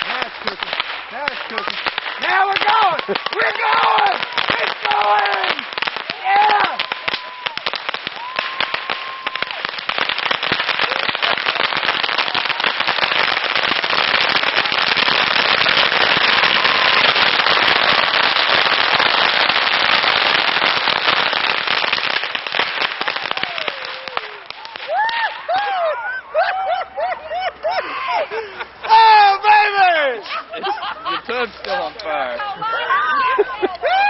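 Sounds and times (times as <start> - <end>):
bottle rockets crackling: 0.0 - 25.5.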